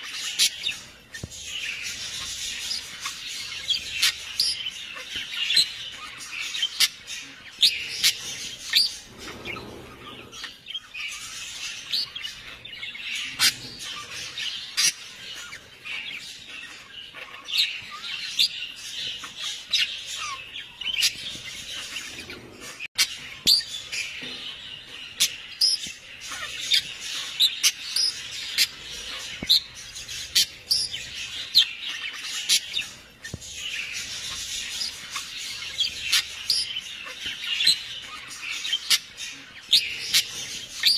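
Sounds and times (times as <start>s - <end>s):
small birds chirping: 0.0s - 40.9s.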